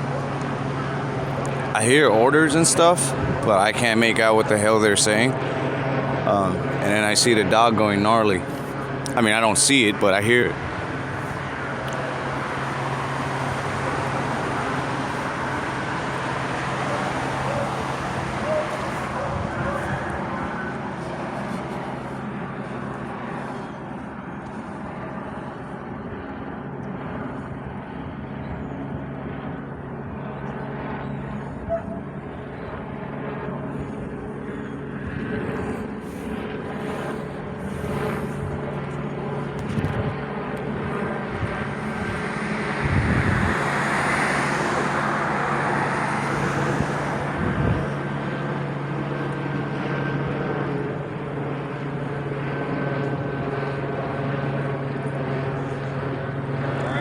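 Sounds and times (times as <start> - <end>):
helicopter drone overhead: 0.0 - 57.0.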